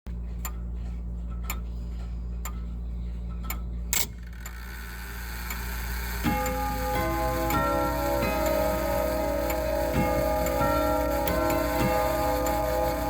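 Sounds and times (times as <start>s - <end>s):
clock ticking: 3.3s - 13.0s
tubular clock chimes: 4.4s - 13.0s
noisy burst: 5.1s - 13.0s.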